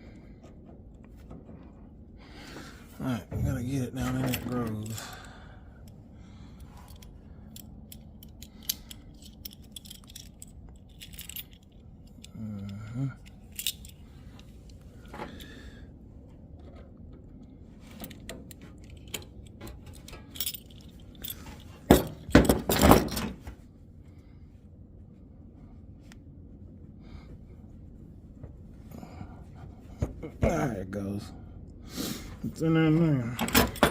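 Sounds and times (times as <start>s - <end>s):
metal parts clinking and tapping: 4.0s - 5.2s, 6.6s - 15.5s, 17.9s - 23.5s, 33.4s - 33.9s.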